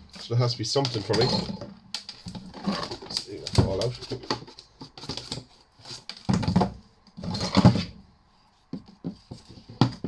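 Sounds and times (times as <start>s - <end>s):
plastic parts scraping and clattering: 0.0s - 8.0s.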